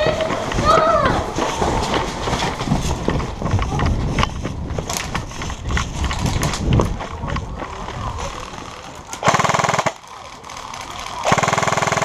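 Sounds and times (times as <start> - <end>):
footfalls: 0.0 - 9.2
sharp clicks: 8.5 - 12.0.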